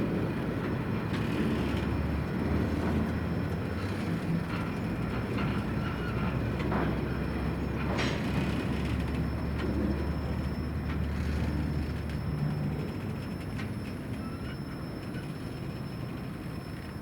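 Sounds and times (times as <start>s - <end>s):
diesel train rumble: 0.0s - 17.0s.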